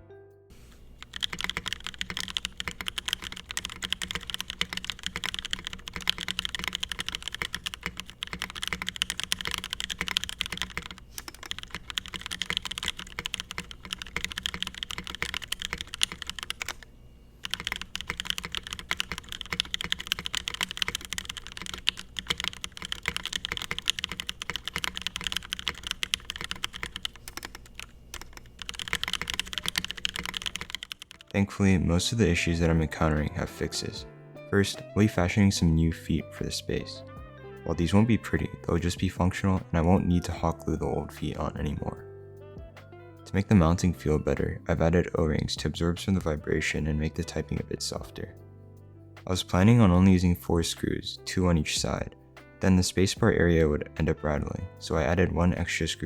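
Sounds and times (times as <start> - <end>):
typing on mechanical keyboard: 1.0 - 16.8, 17.4 - 31.5.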